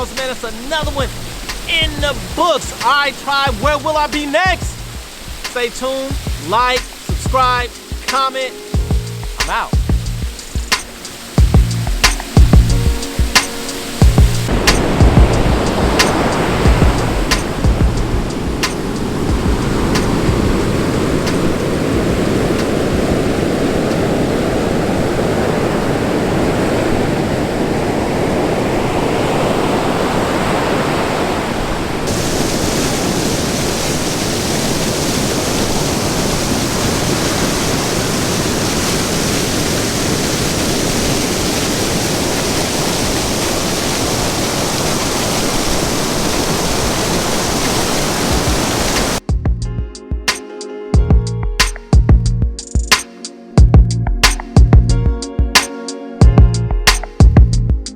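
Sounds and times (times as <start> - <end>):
waterfall pouring: 32.0 - 49.2.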